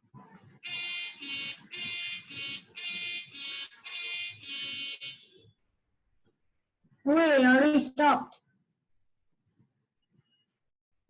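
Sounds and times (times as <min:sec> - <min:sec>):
phone alarm beeping: 0:00.7 - 0:05.4.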